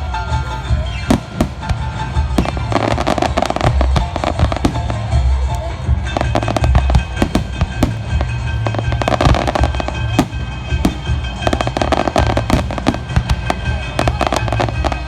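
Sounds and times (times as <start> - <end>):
fireworks bangs and crackles: 0.0 - 15.0
music playing: 0.0 - 15.0.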